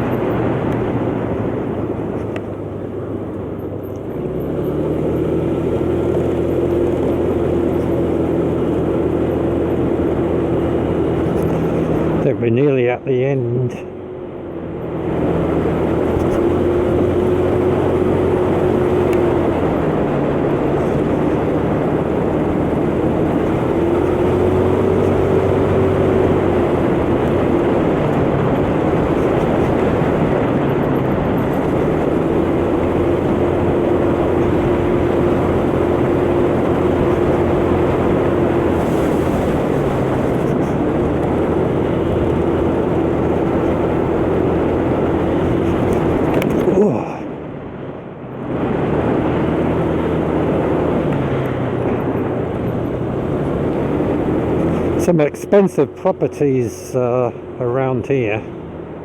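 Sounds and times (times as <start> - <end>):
motor scooter engine running: 0.0 - 12.2, 15.3 - 47.2
continuous rushing noise: 0.0 - 59.0.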